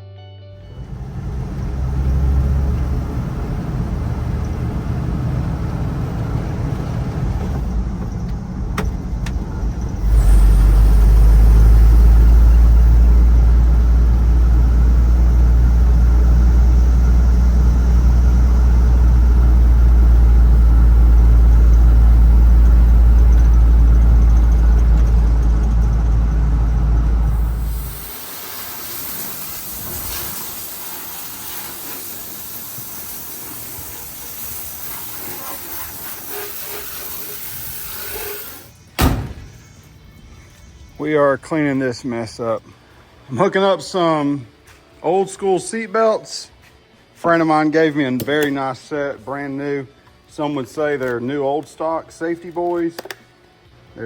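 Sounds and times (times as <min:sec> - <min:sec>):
pickup truck engine rumbling: 0:00.6 - 0:30.8.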